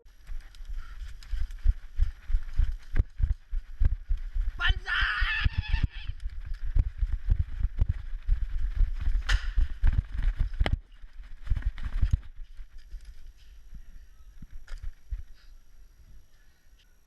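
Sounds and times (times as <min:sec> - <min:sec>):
gear jostling camera: 0:00.1 - 0:04.6, 0:05.4 - 0:15.4.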